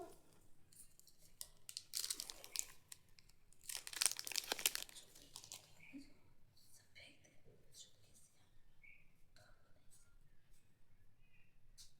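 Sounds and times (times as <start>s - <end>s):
plastic wrapper crinkling and tearing: 0.9s - 5.8s.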